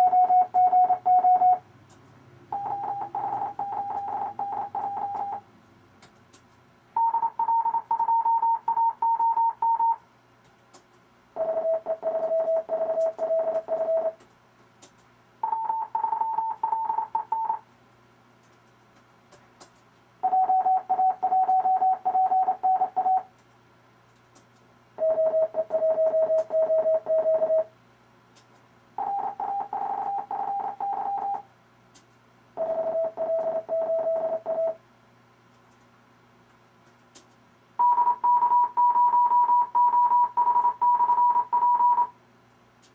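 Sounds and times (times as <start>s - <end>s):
morse code beeps: 0.0s - 1.6s, 2.5s - 5.4s, 7.0s - 10.0s, 11.4s - 14.2s, 15.4s - 17.6s, 20.2s - 23.3s, 25.0s - 27.7s, 29.0s - 31.4s, 32.6s - 34.8s, 37.8s - 42.1s.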